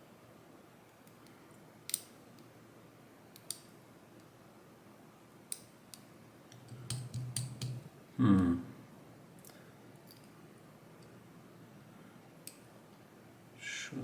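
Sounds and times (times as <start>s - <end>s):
tool clicking inside lock cylinder: 6.6s - 7.8s.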